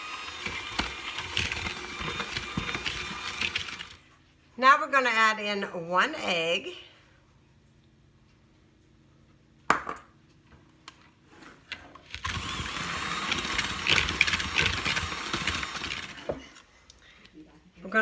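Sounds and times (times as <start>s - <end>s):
egg cracking: 0.0s - 4.0s, 12.0s - 16.6s
electric mixer running: 0.0s - 4.0s, 12.1s - 16.6s.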